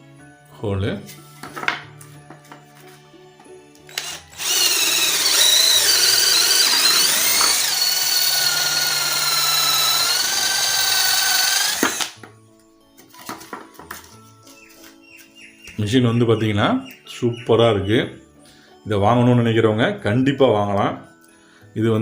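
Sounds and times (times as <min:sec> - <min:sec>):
cordless drill motor whine: 0:03.9 - 0:12.2.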